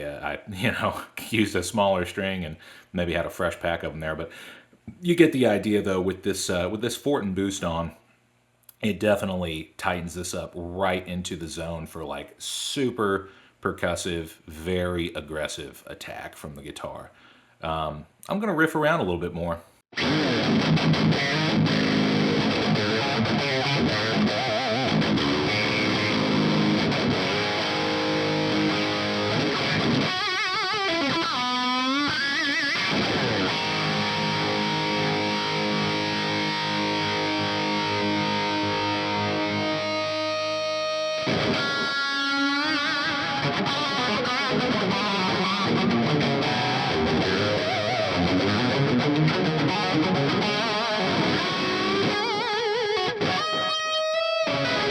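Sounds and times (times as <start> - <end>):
distorted electric guitar riffing: 19.9 - 54.9.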